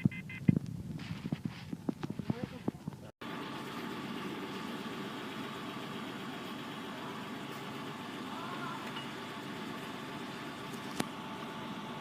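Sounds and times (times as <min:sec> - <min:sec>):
car engine idling: 0:03.2 - 0:12.0.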